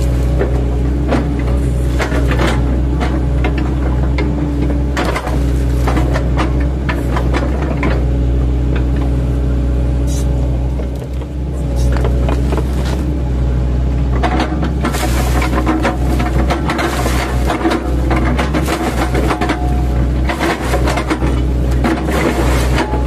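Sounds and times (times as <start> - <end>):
excavator diesel engine: 0.0 - 23.0
bucket chopping into trunks: 14.2 - 23.0.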